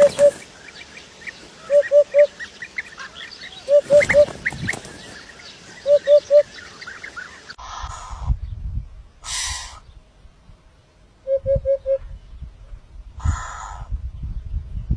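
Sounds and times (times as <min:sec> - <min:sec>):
higher bird chirps: 0:00.0 - 0:07.6
bird calling low even notes: 0:00.0 - 0:08.6.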